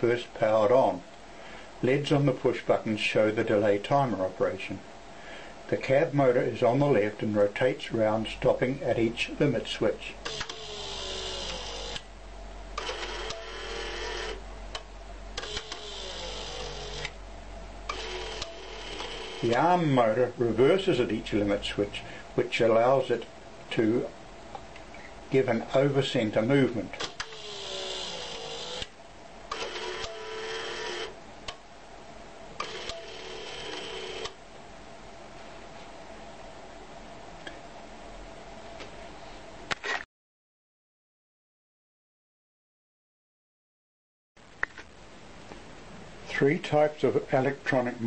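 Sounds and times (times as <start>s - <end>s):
small motors whirring: 10.3s - 12.0s, 15.4s - 17.1s, 17.9s - 19.5s, 27.0s - 28.9s.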